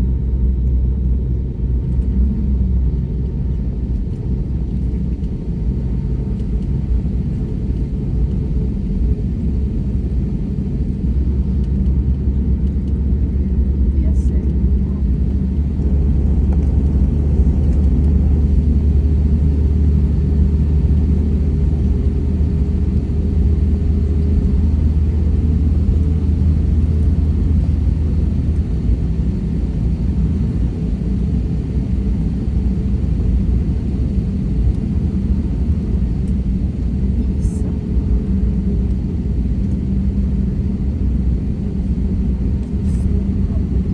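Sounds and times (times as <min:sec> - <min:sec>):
airplane engine rumble: 0:00.0 - 0:43.9.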